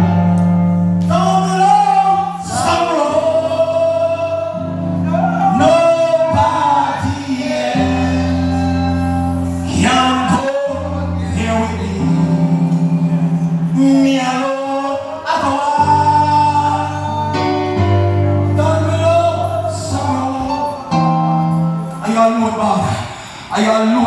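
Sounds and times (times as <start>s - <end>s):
held instrumental chords: 0.0s - 24.0s
gospel singing: 1.0s - 24.0s.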